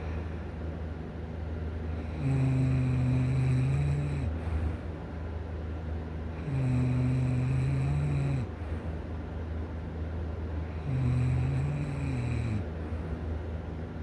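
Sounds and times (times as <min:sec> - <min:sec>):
person snoring: 0:02.0 - 0:04.4, 0:06.4 - 0:08.5, 0:10.8 - 0:12.6.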